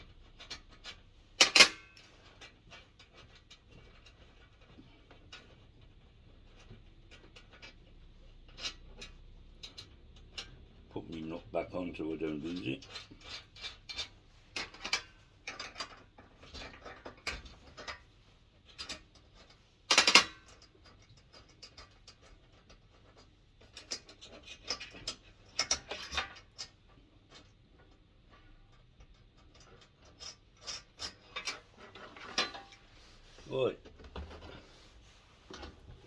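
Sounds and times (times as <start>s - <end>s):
hand tools clicking and knocking: 18.7s - 26.8s.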